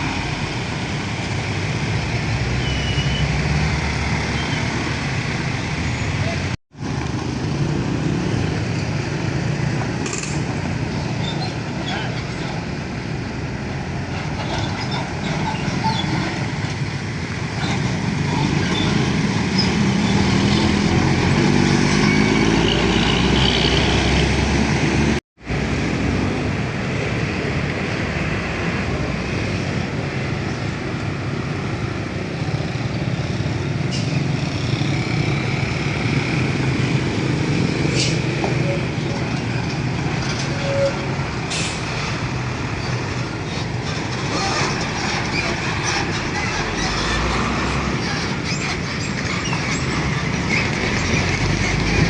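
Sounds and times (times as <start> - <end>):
road traffic noise: 0.0 - 52.0
heavy truck engine revving: 7.3 - 26.6, 32.0 - 52.0.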